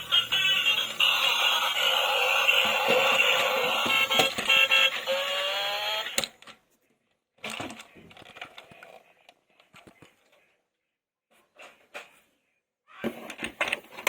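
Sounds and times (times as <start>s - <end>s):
music with rising pitch glide: 0.0s - 6.1s
small clicks and rustling: 7.4s - 10.4s.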